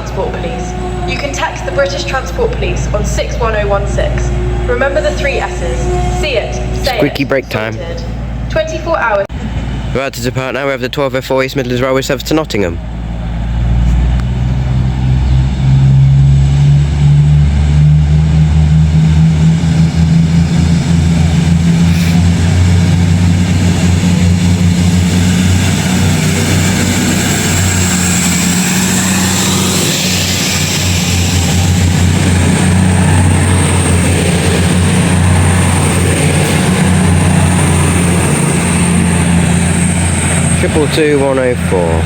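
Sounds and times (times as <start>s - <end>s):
diesel train engine drone: 0.0s - 42.0s
thin whine: 13.9s - 42.0s.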